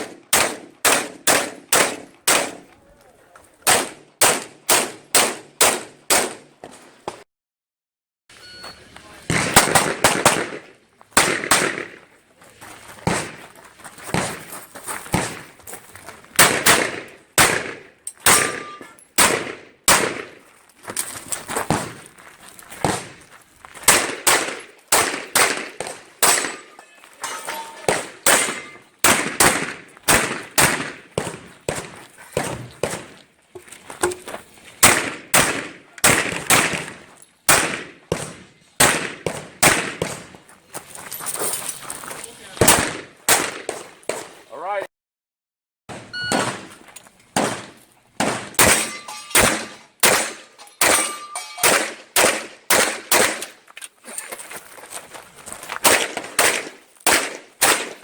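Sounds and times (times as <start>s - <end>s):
rapid pistol gunfire: 0.0s - 2.7s, 3.7s - 6.4s, 9.3s - 12.0s, 16.4s - 18.6s, 19.2s - 20.3s, 23.9s - 26.6s, 27.9s - 33.0s, 34.8s - 40.2s, 47.4s - 51.0s, 51.6s - 53.4s, 55.8s - 58.0s.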